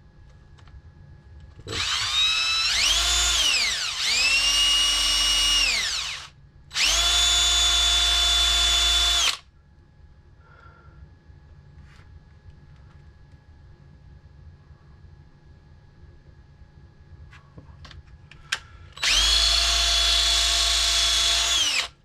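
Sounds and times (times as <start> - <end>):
electric drill boring into plastic: 1.7 - 9.4, 19.0 - 22.0.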